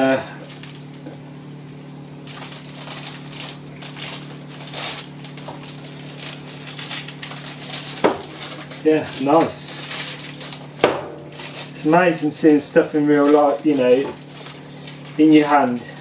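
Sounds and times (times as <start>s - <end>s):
packaging crinkling and rustling: 0.0s - 1.2s, 2.2s - 16.0s
steady low hum: 0.0s - 16.0s.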